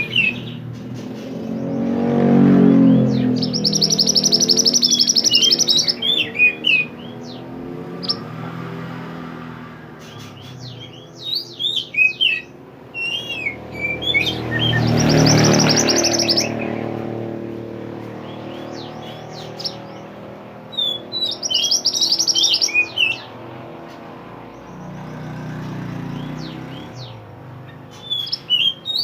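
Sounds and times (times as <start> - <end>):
songbird singing: 0.0 - 29.0
rattling bird trills: 3.1 - 8.2, 13.0 - 17.1, 18.1 - 23.3.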